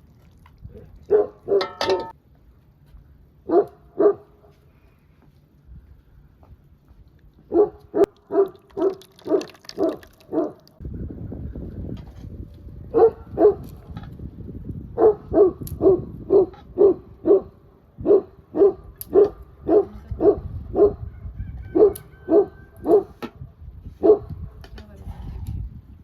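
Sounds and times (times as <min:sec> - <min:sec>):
dog barking: 0:01.1 - 0:02.1, 0:03.5 - 0:04.5, 0:07.5 - 0:10.6, 0:12.9 - 0:13.7, 0:15.0 - 0:21.0, 0:21.7 - 0:23.2, 0:24.0 - 0:24.4.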